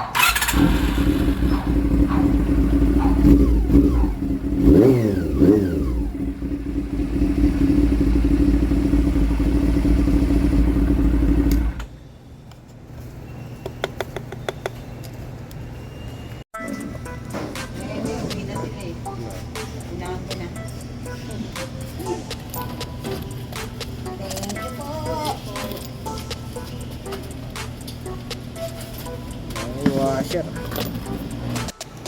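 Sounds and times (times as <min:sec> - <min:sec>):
motorcycle engine idling: 0:00.0 - 0:11.9.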